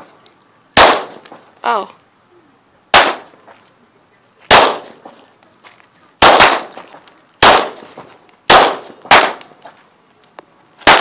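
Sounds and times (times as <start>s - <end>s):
pistol shots echoing: 0.8s - 1.2s, 2.9s - 3.3s, 4.5s - 5.0s, 6.2s - 6.8s, 7.4s - 7.9s, 8.5s - 9.6s.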